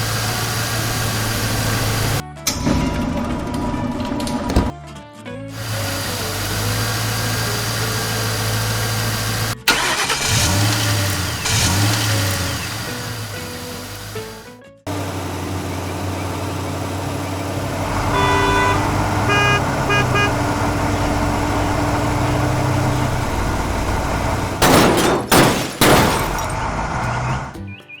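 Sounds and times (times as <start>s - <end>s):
cartoon car engine running: 0.0s - 4.4s, 5.5s - 27.6s
loud hissing bursts: 5.6s - 14.4s
car horn honking: 9.7s - 14.4s, 17.7s - 23.1s.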